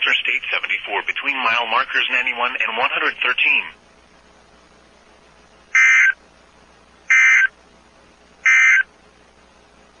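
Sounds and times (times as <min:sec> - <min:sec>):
digital data tone bursts: 0:05.8 - 0:06.2, 0:07.1 - 0:07.5, 0:08.4 - 0:08.9.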